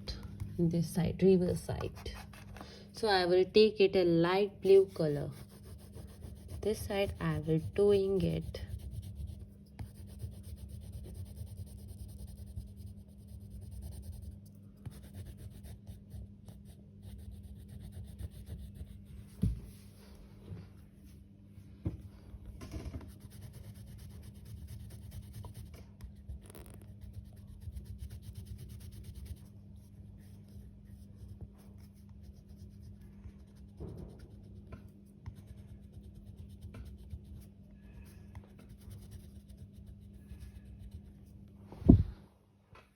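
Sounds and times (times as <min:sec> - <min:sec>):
steady low hum: 0:00.0 - 0:42.9
colouring strokes on paper: 0:04.6 - 0:19.9, 0:23.0 - 0:41.4.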